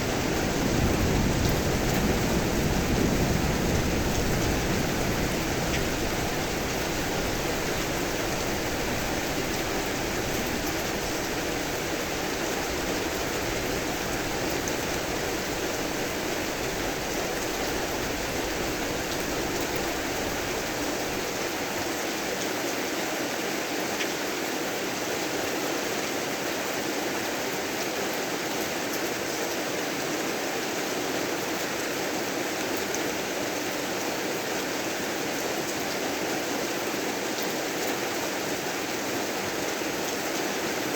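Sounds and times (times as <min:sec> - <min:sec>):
low thunder rumble: 0:00.0 - 0:21.5
heavy rain: 0:00.0 - 0:40.9.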